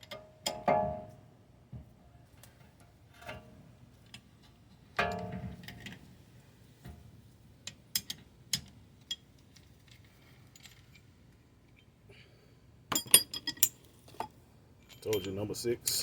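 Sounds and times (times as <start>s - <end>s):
metal tools clinking: 12.9s - 16.0s.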